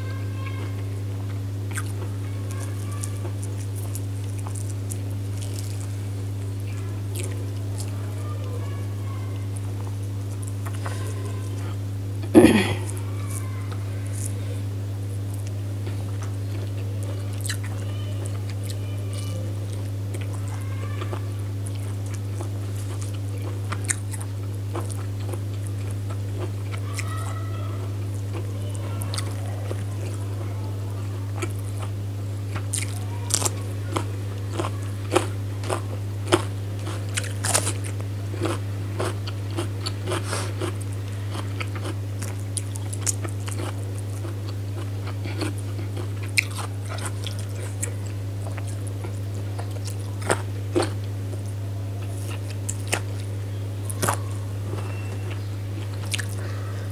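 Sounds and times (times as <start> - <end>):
chewing and crunching: 0.3 - 56.9.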